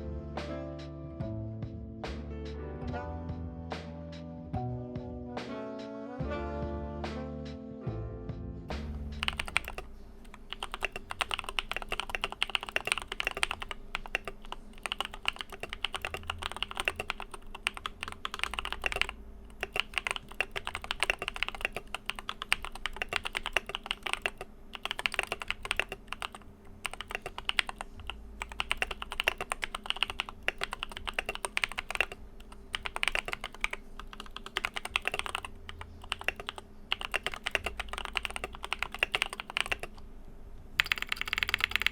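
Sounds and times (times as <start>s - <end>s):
fan humming: 8.7s - 41.9s
mechanical keyboard typing: 9.2s - 40.0s, 40.8s - 41.9s.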